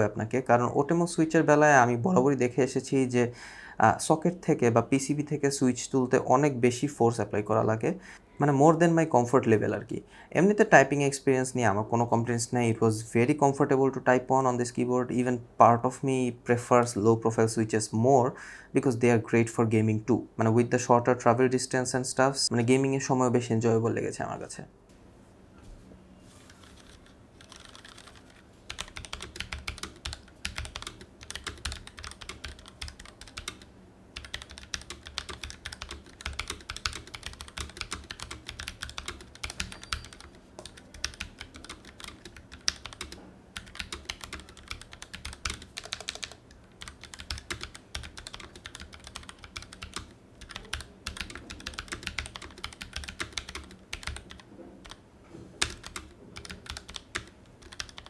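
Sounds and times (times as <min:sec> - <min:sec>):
mechanical keyboard typing: 0:26.5 - 0:55.0, 0:55.6 - 0:58.0.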